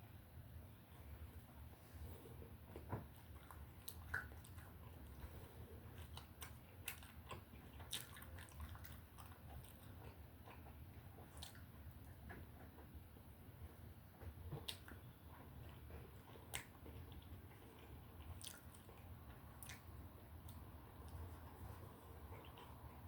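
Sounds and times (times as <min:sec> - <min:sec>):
low steady hum: 0:00.0 - 0:23.0
person chewing: 0:03.1 - 0:11.8, 0:14.5 - 0:23.0.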